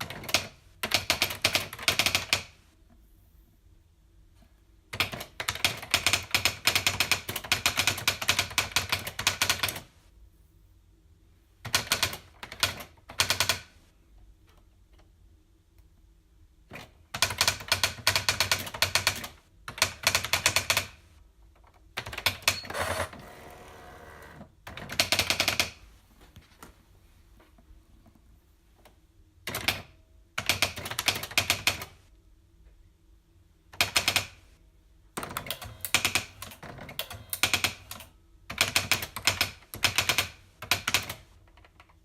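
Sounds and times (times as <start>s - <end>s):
typewriter keys clicking: 5.0s - 9.9s, 29.5s - 32.0s, 35.2s - 42.0s.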